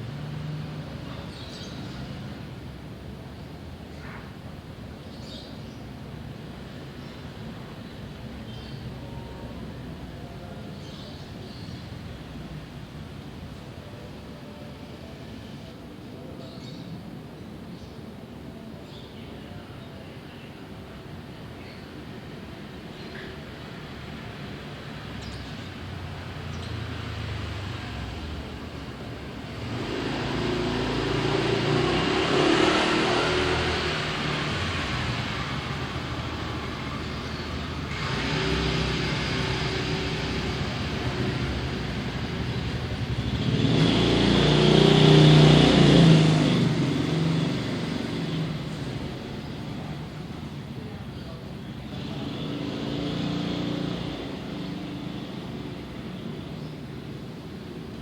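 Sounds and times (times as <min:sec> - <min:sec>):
vehicle passing by: 0:26.2 - 0:50.5, 0:51.8 - 0:58.0.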